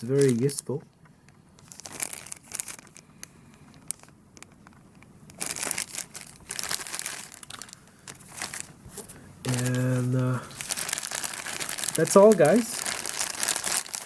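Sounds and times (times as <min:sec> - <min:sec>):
packaging crinkling and rustling: 0:00.0 - 0:00.8, 0:01.6 - 0:14.0.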